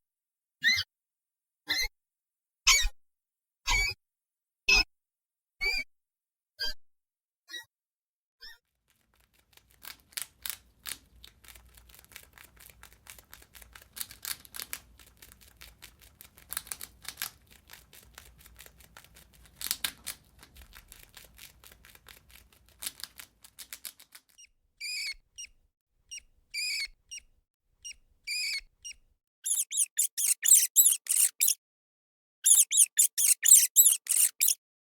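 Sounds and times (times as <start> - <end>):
rat squeaking: 24.3 - 31.6, 32.4 - 34.6
rapid scratchy clicking: 29.5 - 31.6, 32.5 - 34.6.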